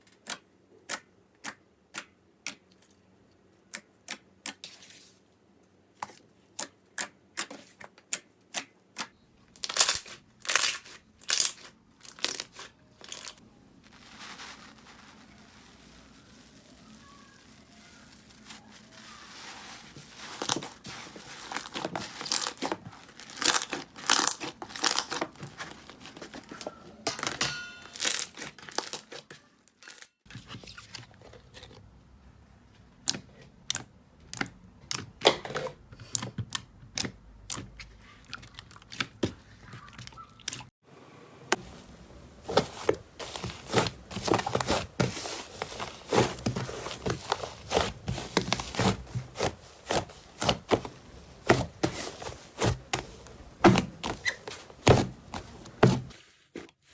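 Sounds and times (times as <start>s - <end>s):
slime crackling and popping: 9.6s - 25.2s.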